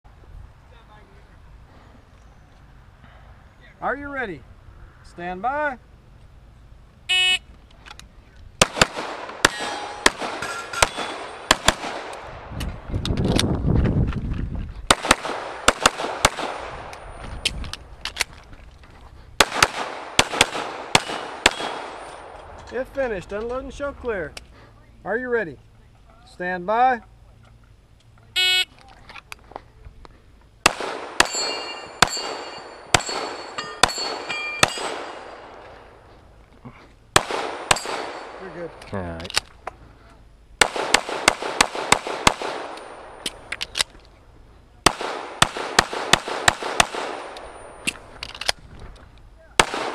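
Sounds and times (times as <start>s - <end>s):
pistol shots: 8.6s - 12.3s, 14.9s - 17.0s, 19.4s - 22.4s, 30.6s - 35.8s, 37.2s - 38.8s, 40.6s - 43.9s, 44.8s - 48.0s, 49.6s - 49.9s
steel targets clanging: 9.4s - 11.4s, 31.2s - 35.3s.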